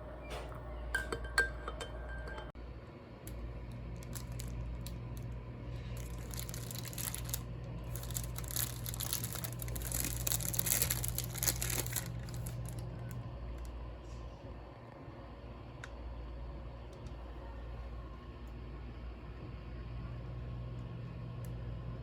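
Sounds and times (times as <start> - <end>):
steady low hum: 0.0 - 22.0
crinkling and rustling: 3.7 - 13.2.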